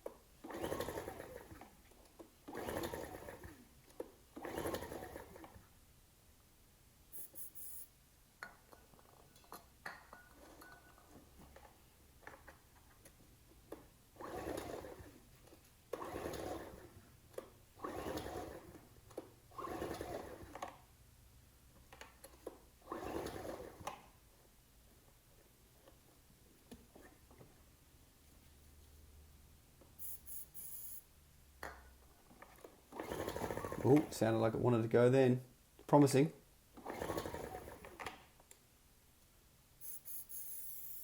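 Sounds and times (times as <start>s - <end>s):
generator recoil starter pulls: 2.5s - 5.6s, 32.6s - 34.6s, 36.8s - 38.2s.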